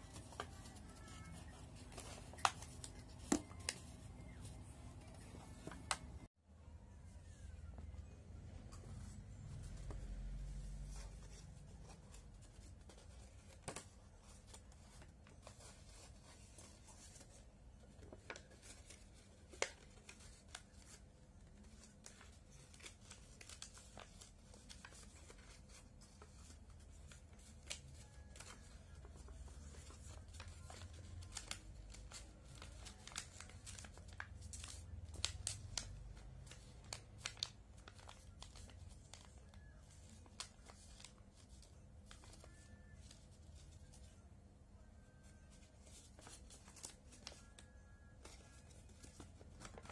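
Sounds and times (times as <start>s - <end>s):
paper rustling: 0.0s - 6.3s, 8.7s - 44.2s, 45.0s - 49.9s
paper creasing taps: 0.1s - 4.4s.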